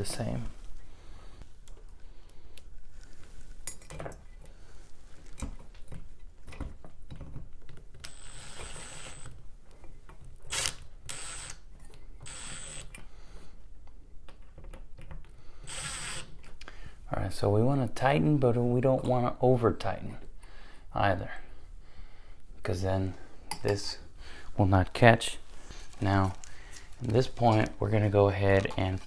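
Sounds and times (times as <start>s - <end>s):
power tool driving screws: 8.0s - 9.4s, 10.5s - 11.6s, 12.2s - 13.0s, 15.6s - 16.4s.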